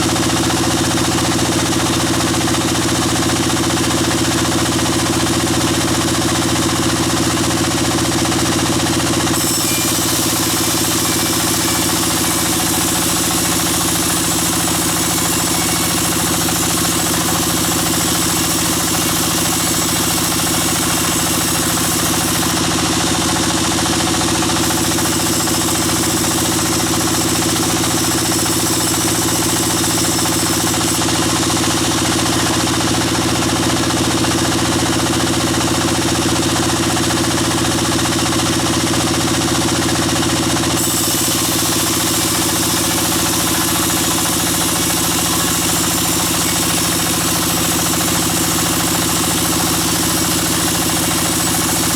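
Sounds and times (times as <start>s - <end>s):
sawmill machinery drone: 0.0s - 51.9s.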